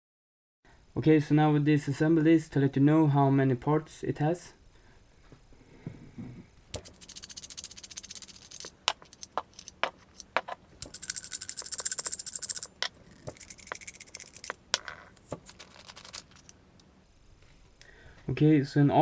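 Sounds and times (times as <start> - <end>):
clicks and taps of parts: 6.8 - 16.9
threads rasping while unscrewing: 6.8 - 17.0.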